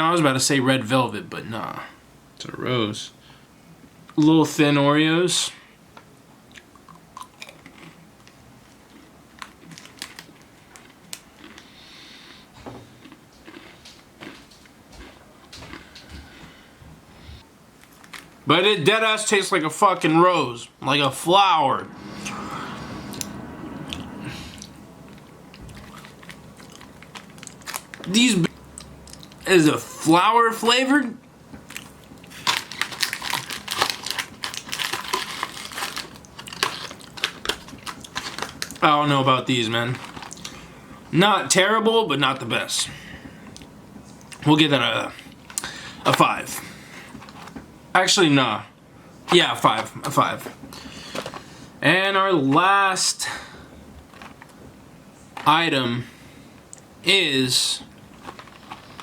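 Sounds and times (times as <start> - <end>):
crunchy cookies being eaten: 6.5 - 16.1, 23.9 - 29.5, 31.7 - 38.8, 57.9 - 59.0
soft breath or sniff: 11.6 - 12.6.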